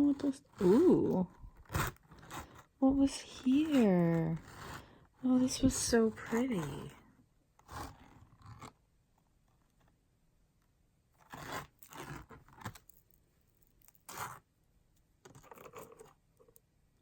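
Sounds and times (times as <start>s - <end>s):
jewelry rustling in a box: 0.0s - 7.0s, 11.2s - 14.5s.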